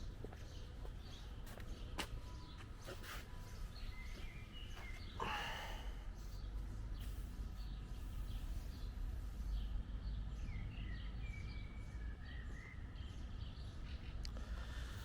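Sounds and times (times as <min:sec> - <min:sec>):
small birds chirping: 0:00.0 - 0:15.0
low outdoor rumble: 0:03.6 - 0:15.0.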